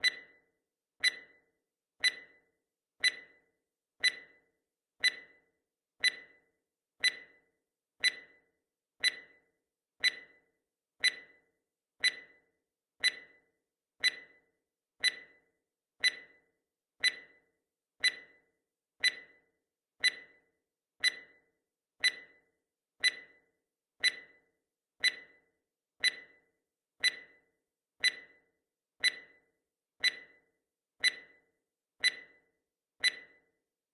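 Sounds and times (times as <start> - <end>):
timer ticking: 0.0 - 0.4, 1.0 - 1.4, 2.0 - 2.4, 3.0 - 4.4, 5.0 - 6.4, 7.0 - 13.4, 14.0 - 14.4, 15.0 - 16.4, 17.0 - 19.4, 20.0 - 20.4, 21.0 - 21.4, 22.0 - 22.4, 23.0 - 33.5.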